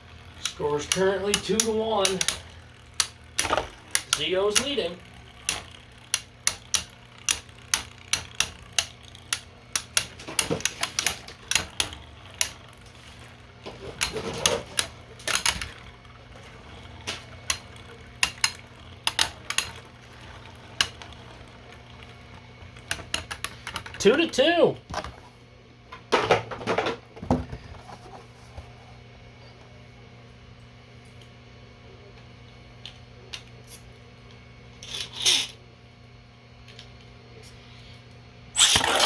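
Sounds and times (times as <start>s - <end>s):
spinning tops clacking together: 0.3s - 21.4s, 38.6s - 39.0s.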